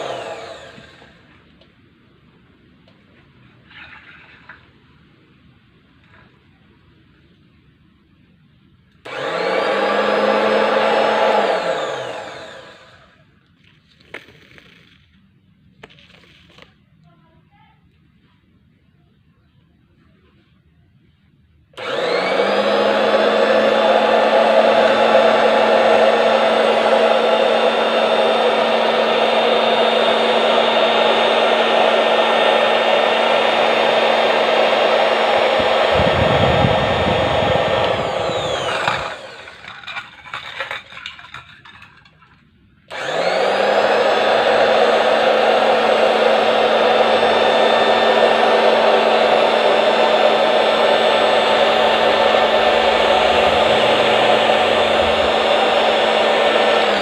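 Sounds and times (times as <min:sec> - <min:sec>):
cutting machine motor whine: 0:00.0 - 0:01.2, 0:09.1 - 0:13.2, 0:21.8 - 0:40.8, 0:42.9 - 0:57.0
deeper rumble: 0:35.5 - 0:39.3, 0:51.6 - 0:56.5.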